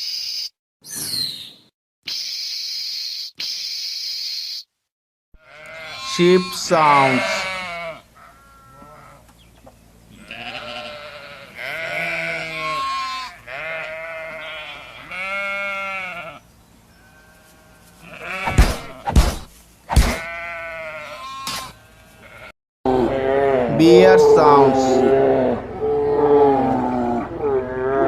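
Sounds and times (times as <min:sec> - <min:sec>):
sheep bleating: 0:05.4 - 0:09.3, 0:10.1 - 0:19.0, 0:20.1 - 0:25.6
sharp knocks: 0:18.5 - 0:20.2.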